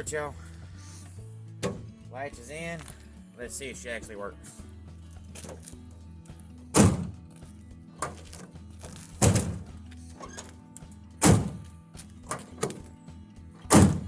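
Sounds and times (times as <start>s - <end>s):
background music: 0.0s - 14.0s
latch clicks: 1.6s - 2.0s, 5.4s - 5.8s, 6.7s - 7.4s, 8.0s - 13.0s, 13.6s - 14.0s
tailgate heavy thunks: 1.6s - 2.0s, 5.4s - 5.7s, 6.7s - 7.4s, 8.0s - 10.6s, 11.2s - 13.0s, 13.6s - 14.0s.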